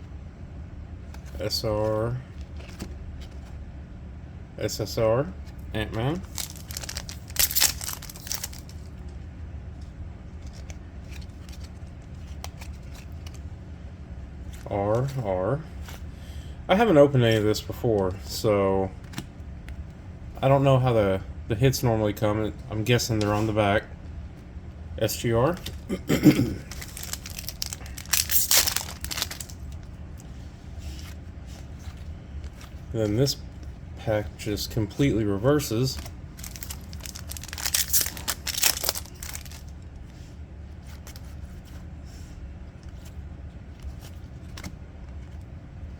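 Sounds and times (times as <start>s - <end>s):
low steady hum: 0.0s - 45.9s
cards being handled: 1.0s - 3.6s, 5.4s - 13.5s, 17.2s - 19.9s, 22.9s - 23.7s, 25.1s - 25.9s, 26.5s - 45.9s
card pack wrapper crinkling: 6.2s - 8.9s, 26.6s - 29.9s, 34.6s - 39.8s.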